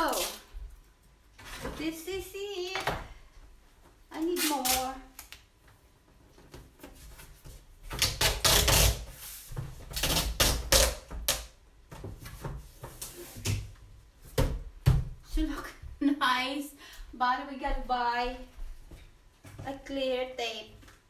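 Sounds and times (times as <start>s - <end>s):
packing tape pulled off roll: 0.0s - 0.5s, 4.3s - 5.5s, 7.9s - 11.5s.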